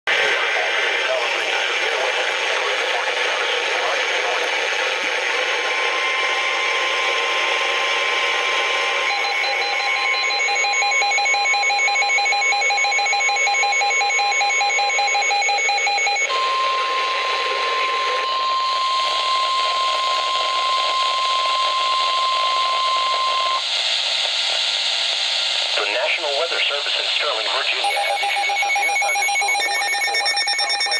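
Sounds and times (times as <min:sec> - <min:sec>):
radio static hiss: 0:00.1 - 0:09.0, 0:16.3 - 0:30.3
warbling data tones: 0:00.5 - 0:24.5, 0:25.8 - 0:30.9
steady alarm tone: 0:00.5 - 0:25.8, 0:27.2 - 0:30.9.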